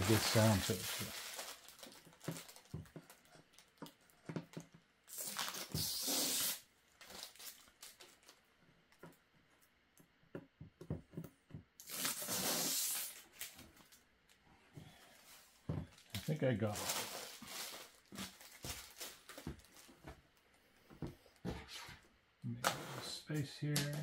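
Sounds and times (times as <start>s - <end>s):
plastic film being peeled off: 0.0s - 3.7s, 5.1s - 8.4s, 11.8s - 14.0s.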